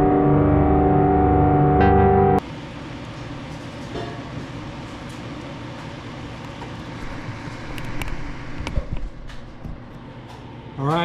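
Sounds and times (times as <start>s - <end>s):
steady mechanical hum: 2.4s - 11.0s.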